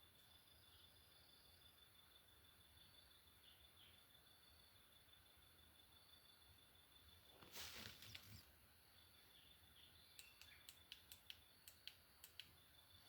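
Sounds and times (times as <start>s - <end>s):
sharp clicks: 10.2s - 12.6s.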